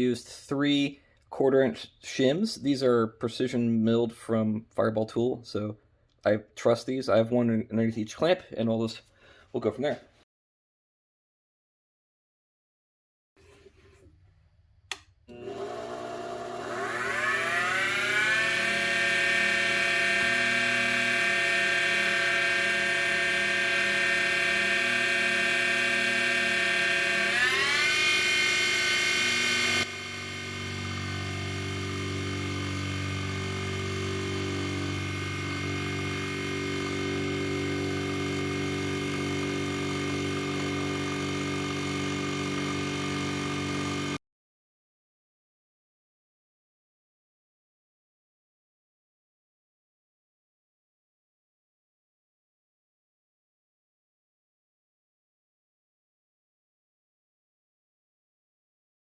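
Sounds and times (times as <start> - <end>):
mini mill motor whining: 15.3 - 44.2.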